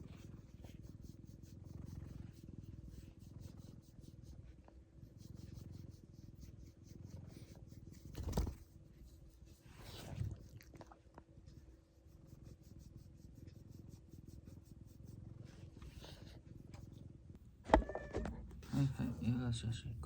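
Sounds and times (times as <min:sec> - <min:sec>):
cat purring: 0:00.0 - 0:20.0.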